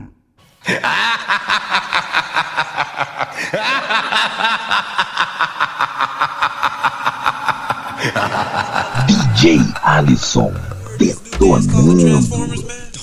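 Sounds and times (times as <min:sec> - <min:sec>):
sped-up vocal sample snickering: 0:07.5 - 0:12.2.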